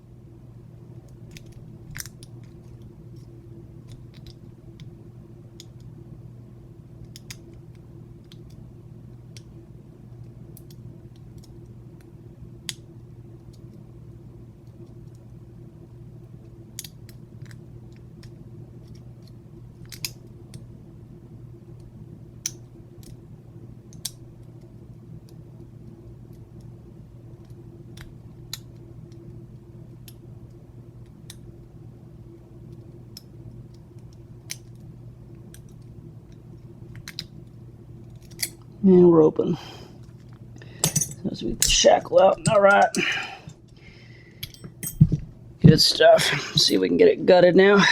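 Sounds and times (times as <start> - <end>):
steady low hum: 0.0 - 47.9
lock pick metallic clicks: 40.8 - 41.8, 44.4 - 45.1.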